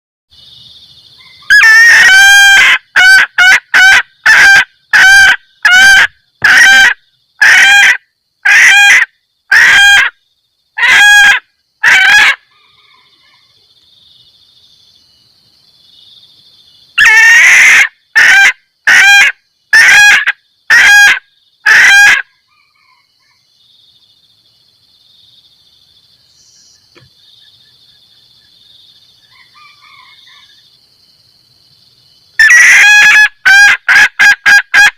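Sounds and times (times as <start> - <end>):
junglefowl clucking call: 1.2 - 10.2, 10.8 - 13.5, 17.0 - 23.4, 32.4 - 34.9.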